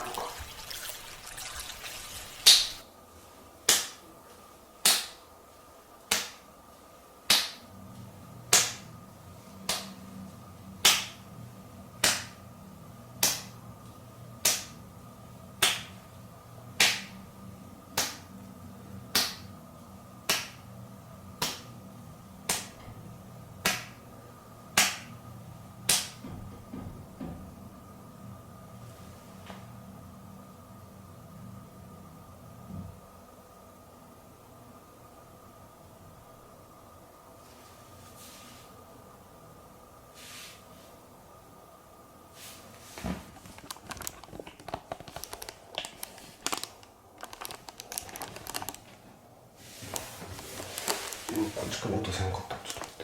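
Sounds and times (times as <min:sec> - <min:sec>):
faint steady hum: 0:00.0 - 0:53.0
hands clapping with echo: 0:07.3 - 0:07.6, 0:08.5 - 0:08.9, 0:10.8 - 0:11.2, 0:12.0 - 0:12.4, 0:13.2 - 0:13.6, 0:14.4 - 0:14.8, 0:15.6 - 0:16.0, 0:16.8 - 0:17.1, 0:18.0 - 0:18.3, 0:19.1 - 0:19.5, 0:20.3 - 0:20.6, 0:21.4 - 0:21.7, 0:22.5 - 0:22.8, 0:23.6 - 0:24.0, 0:24.8 - 0:25.1, 0:25.9 - 0:26.2.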